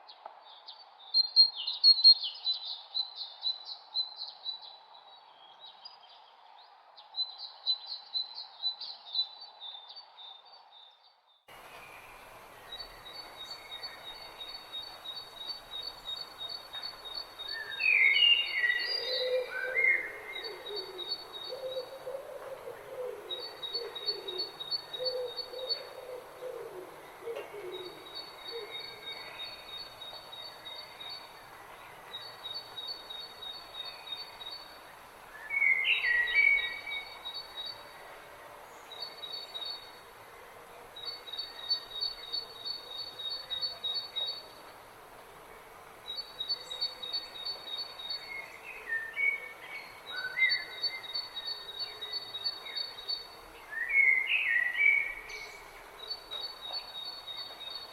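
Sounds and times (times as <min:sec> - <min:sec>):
birds chirping: 0:11.5 - 0:44.9.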